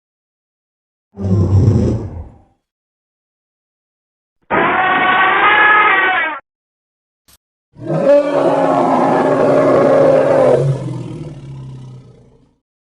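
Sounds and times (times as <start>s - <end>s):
creature roaring: 1.2s - 2.4s, 4.5s - 6.4s, 7.8s - 12.6s.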